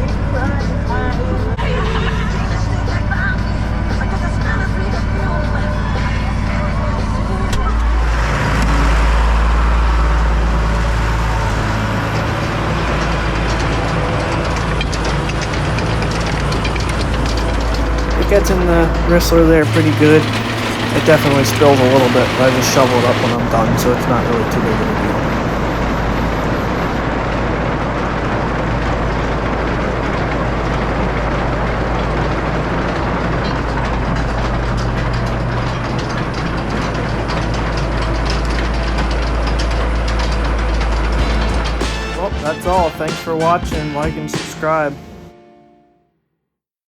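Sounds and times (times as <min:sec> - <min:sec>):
farm machinery engine drone: 0:00.0 - 0:45.5.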